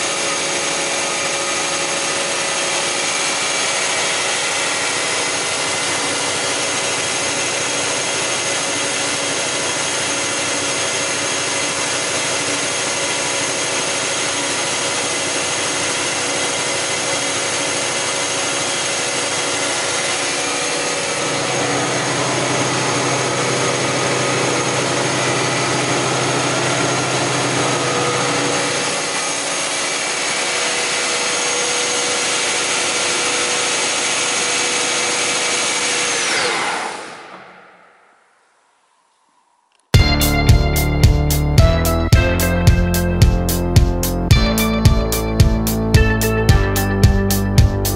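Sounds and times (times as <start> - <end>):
planer cutter heads whining: 0.0 - 38.0.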